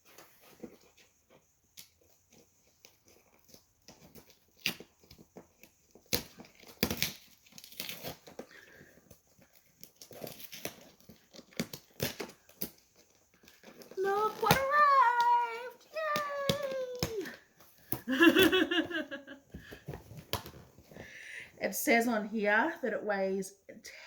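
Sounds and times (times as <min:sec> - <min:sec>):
packaging crinkling and rustling: 0:02.0 - 0:21.1
packaging tearing: 0:06.0 - 0:08.6, 0:09.7 - 0:18.8.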